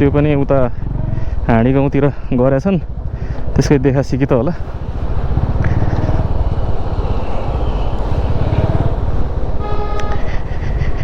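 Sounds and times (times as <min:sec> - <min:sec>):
motorcycle engine running: 0:00.0 - 0:01.5, 0:02.8 - 0:11.0
vehicle horn beeping: 0:09.4 - 0:10.8.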